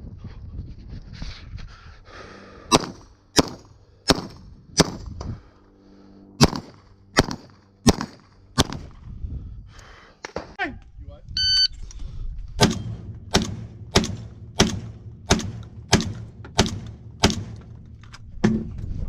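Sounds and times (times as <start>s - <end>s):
rapid gunshots: 2.7s - 5.1s, 6.4s - 8.9s, 12.6s - 17.6s.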